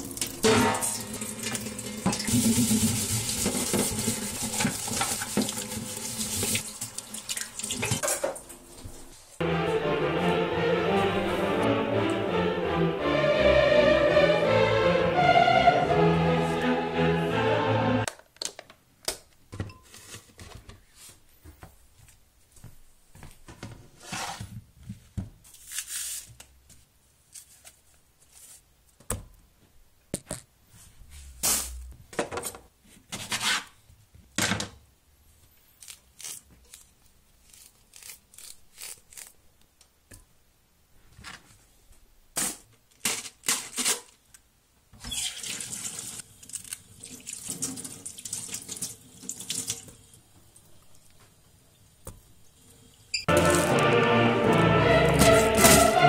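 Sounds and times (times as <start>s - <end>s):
water splashing and clattering: 0.0s - 8.6s, 45.4s - 50.0s.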